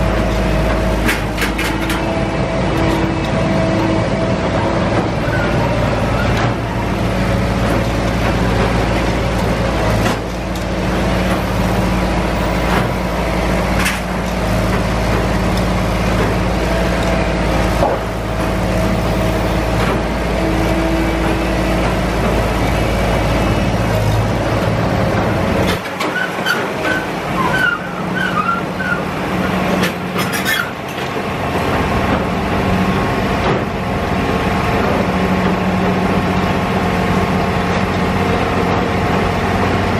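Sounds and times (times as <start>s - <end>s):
heavy diesel machinery rumbling: 0.0s - 39.9s
short high squeaks: 26.0s - 29.1s, 30.2s - 30.8s.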